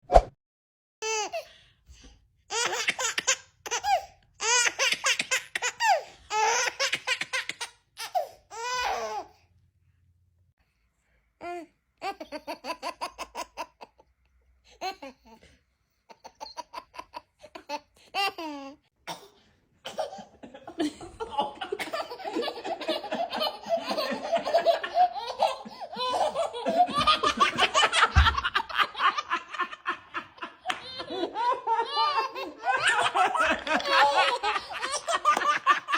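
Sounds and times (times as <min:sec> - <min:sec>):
babies giggling: 0:02.5 - 0:09.0, 0:16.1 - 0:18.8, 0:19.9 - 0:35.9
baby belly laughter: 0:02.5 - 0:09.2, 0:12.0 - 0:14.1, 0:16.1 - 0:19.2, 0:19.9 - 0:35.9
low thump: 0:28.2 - 0:28.6.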